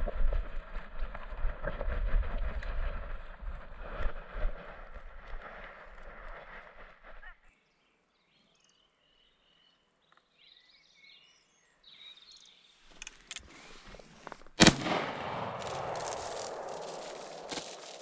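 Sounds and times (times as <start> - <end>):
rushing noise after shot: 14.6 - 18.0
shotgun shot: 14.6 - 18.0.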